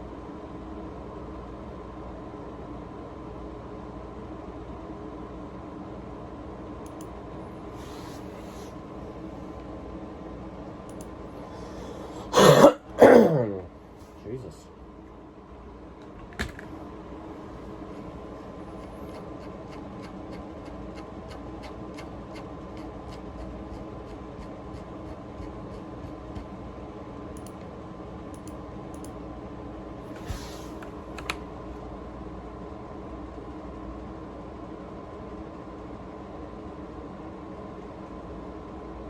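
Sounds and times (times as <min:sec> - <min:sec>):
electrical hum: 0:00.0 - 0:39.0
typing on computer keyboard: 0:31.1 - 0:31.4.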